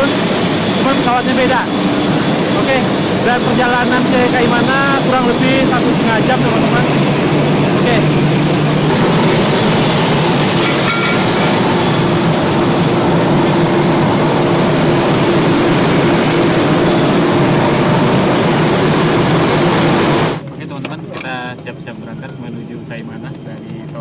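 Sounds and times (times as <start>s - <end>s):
turboprop engine drone: 0.0s - 20.5s.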